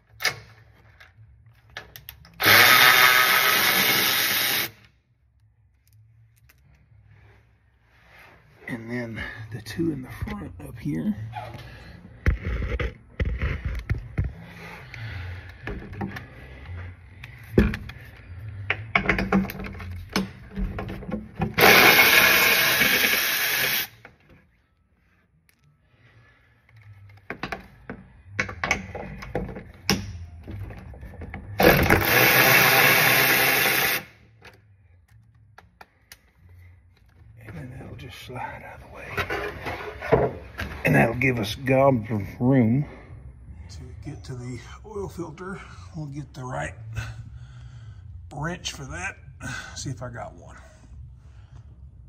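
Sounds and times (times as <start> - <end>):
cordless electric ratchet running: 2.4 - 4.8, 21.6 - 24.0, 31.6 - 34.1.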